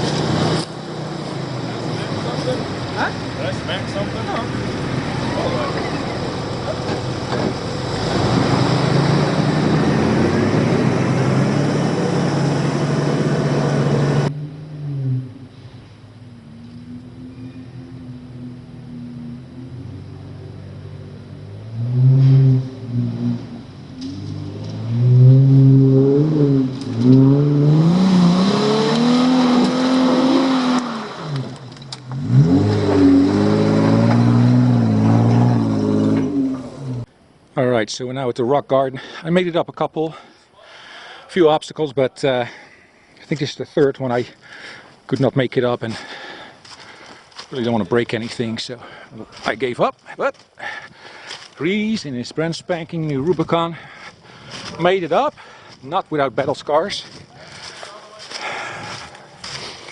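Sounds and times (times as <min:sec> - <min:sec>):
engine running under load: 0:00.0 - 0:37.1.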